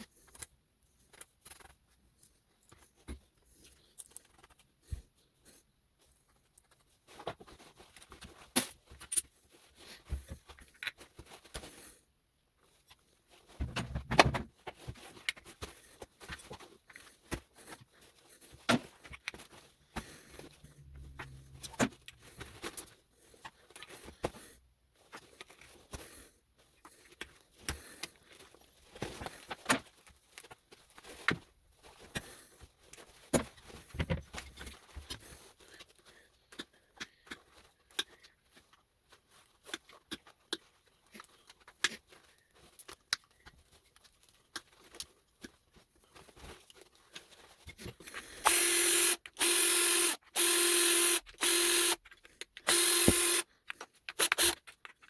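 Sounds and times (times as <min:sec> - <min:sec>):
small electric motor running: 0:48.5 - 0:52.0, 0:52.7 - 0:53.4, 0:54.2 - 0:54.6.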